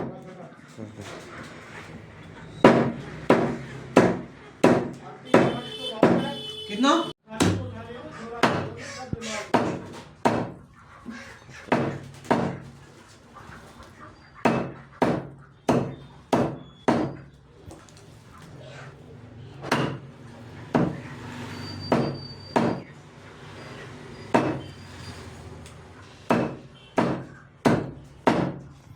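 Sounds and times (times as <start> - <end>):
cleaver chopping chicken: 2.6 - 6.4, 7.3 - 7.8, 8.4 - 12.8, 14.4 - 17.3, 19.6 - 20.1, 20.7 - 21.2, 21.9 - 22.9, 24.4 - 24.6, 26.3 - 28.7.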